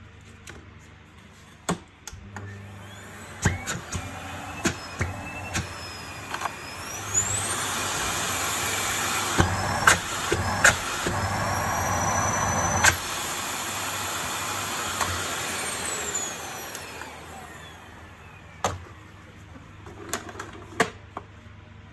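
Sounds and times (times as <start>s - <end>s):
vacuum cleaner motor whine: 2.1s - 19.5s.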